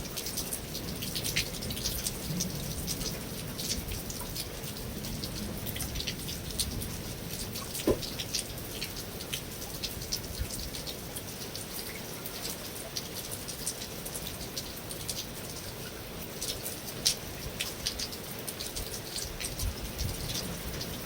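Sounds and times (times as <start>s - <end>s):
rain falling: 0.0s - 21.0s.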